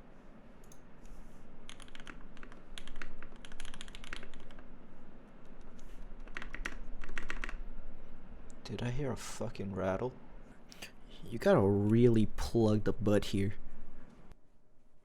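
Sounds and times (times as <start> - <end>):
mechanical keyboard typing: 1.7 - 4.6, 5.7 - 7.6.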